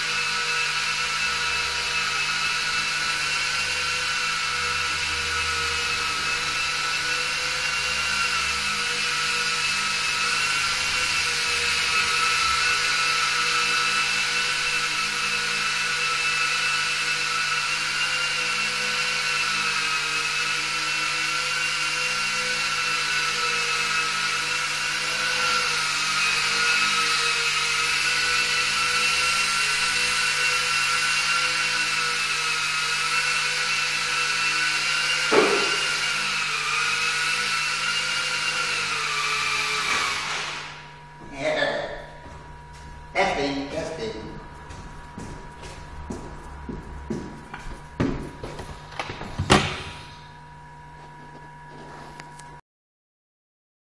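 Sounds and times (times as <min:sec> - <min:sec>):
toy plane motors whining: 0:00.0 - 0:40.9.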